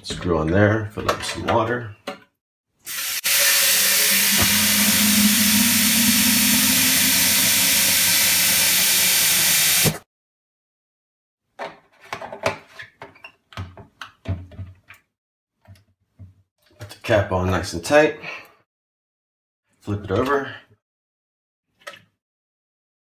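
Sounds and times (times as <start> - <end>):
tap water running into plastic tank: 3.2 - 8.6.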